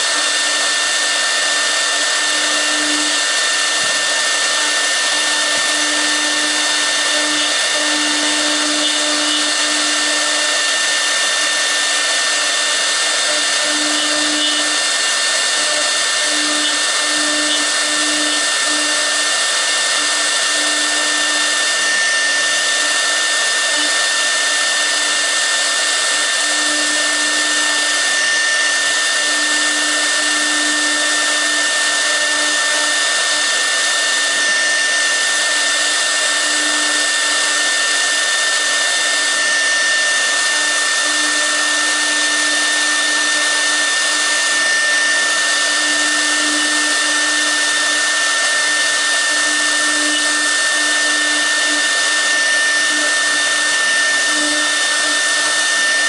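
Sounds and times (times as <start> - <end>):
router spindle high whine: 0.0 - 56.0.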